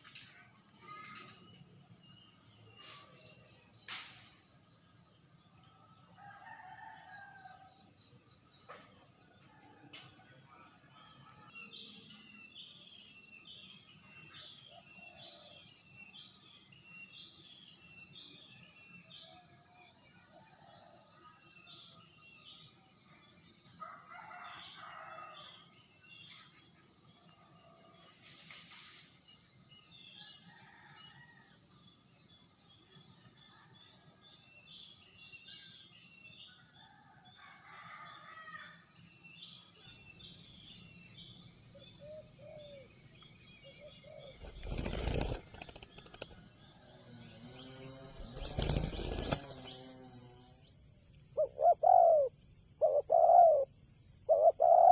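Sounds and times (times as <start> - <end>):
high-pitched insect drone: 38.6 - 52.3
loud rustling bursts: 44.4 - 46.5, 47.8 - 49.7.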